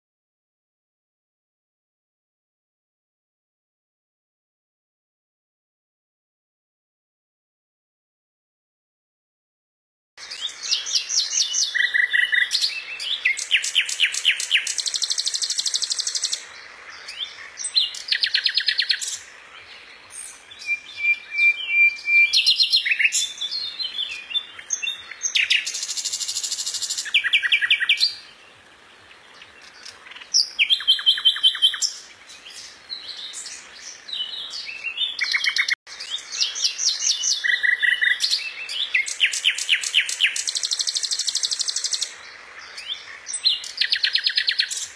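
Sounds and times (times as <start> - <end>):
finch singing: 10.2 - 28.5, 29.1 - 44.9.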